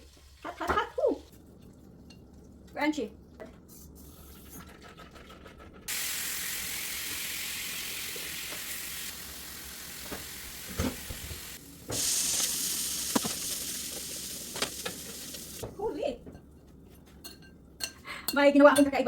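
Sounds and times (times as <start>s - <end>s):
food sizzling in a pan: 5.9s - 15.6s.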